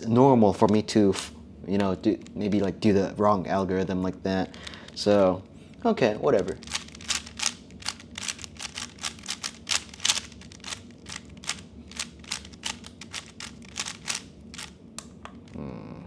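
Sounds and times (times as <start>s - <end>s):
puzzle cube plastic clicks: 4.4s - 15.6s.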